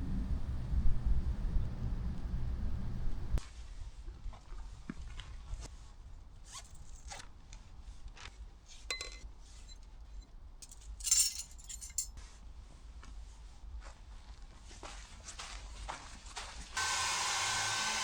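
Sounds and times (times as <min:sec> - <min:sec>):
ringing clink: 0:08.9 - 0:09.2, 0:10.6 - 0:12.1.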